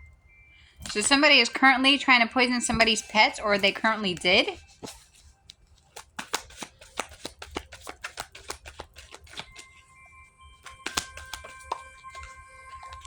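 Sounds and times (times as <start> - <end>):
soft background music: 0.0 - 13.0
cards being shuffled: 2.8 - 9.9, 10.6 - 13.0.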